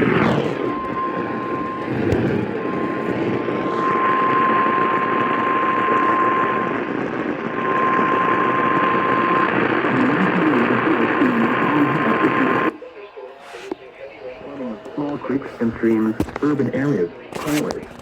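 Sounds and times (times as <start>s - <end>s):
steady high whistle: 0.0s - 6.8s
radio static hiss: 0.0s - 18.0s.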